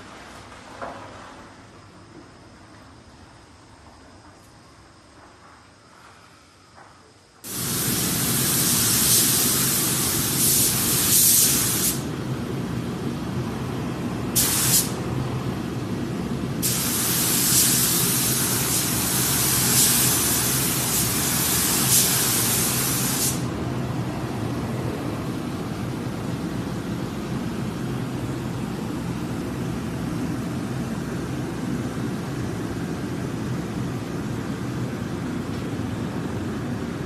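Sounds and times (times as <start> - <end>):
steady machine hum: 7.3 - 37.0
loud hissing: 7.4 - 12.1, 14.3 - 15.1, 16.5 - 23.6.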